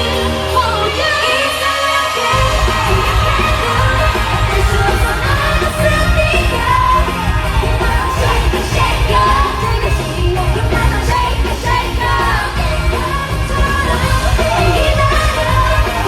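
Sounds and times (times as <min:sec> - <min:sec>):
crowd yelling: 0:00.0 - 0:16.0
live pop music with heavy bass: 0:00.0 - 0:16.0
person singing: 0:00.0 - 0:16.0.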